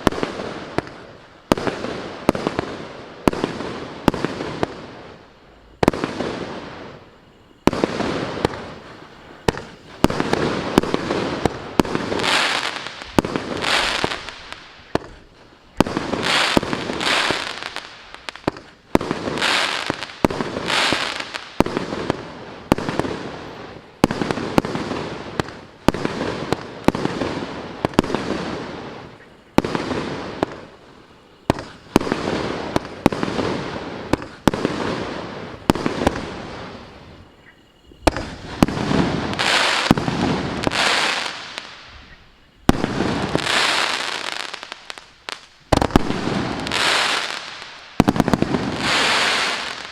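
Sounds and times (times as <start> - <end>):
fireworks cake bangs: 31.4 - 35.0, 45.7 - 47.4.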